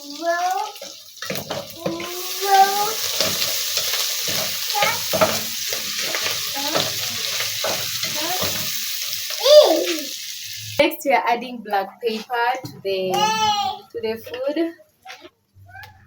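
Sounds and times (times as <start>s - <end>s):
meat sizzling in a pot: 0.0s - 10.8s
scraping stirring strokes: 0.8s - 9.3s
high voice-like cry: 9.4s - 10.1s.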